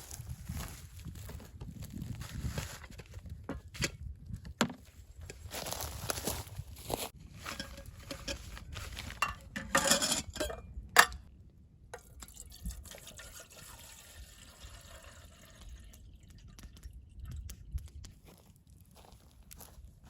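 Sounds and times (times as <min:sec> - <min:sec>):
cookware clinking: 0:09.2 - 0:11.2
liquid pouring: 0:12.0 - 0:17.4.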